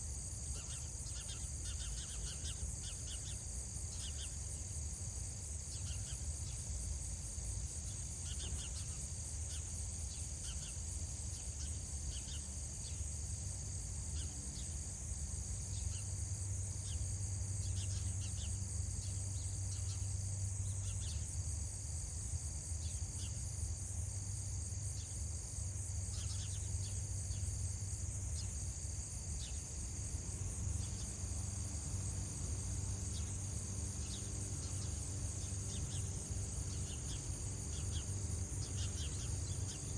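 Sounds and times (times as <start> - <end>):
insects chirring: 0.1 - 39.9
pulsing insect trill: 15.4 - 39.9.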